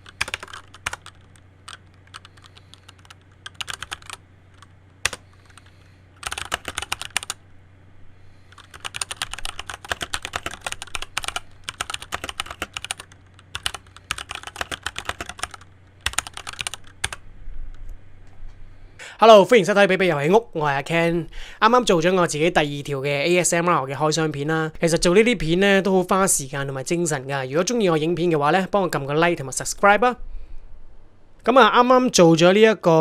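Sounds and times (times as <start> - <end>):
mechanical keyboard typing: 0.0 - 7.4, 8.5 - 17.2.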